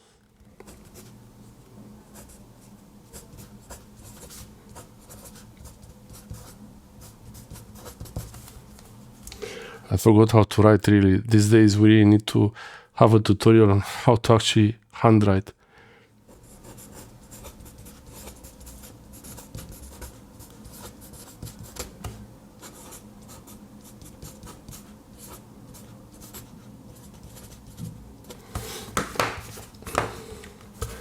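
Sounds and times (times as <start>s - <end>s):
pencil scratching on paper: 3.1s - 8.5s, 16.3s - 29.6s.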